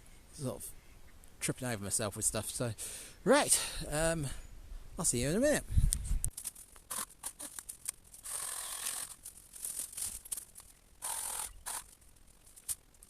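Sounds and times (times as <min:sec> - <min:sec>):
shrub branches rustling and crackling: 0:06.2 - 0:13.0
rasping bursts: 0:08.2 - 0:09.2, 0:11.0 - 0:12.0.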